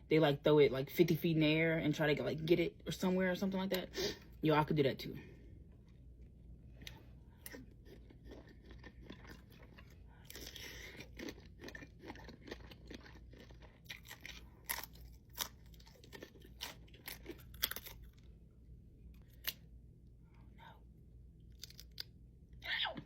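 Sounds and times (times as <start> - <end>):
chewing and crunching: 5.6 - 18.5, 21.4 - 22.2.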